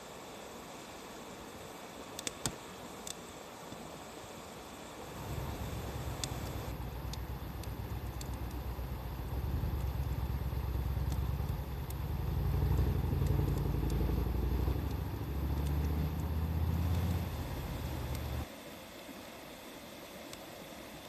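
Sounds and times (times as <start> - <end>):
bonfire crackling: 2.1 - 3.8, 4.9 - 18.5
vehicle engine rumbling low: 5.1 - 18.5.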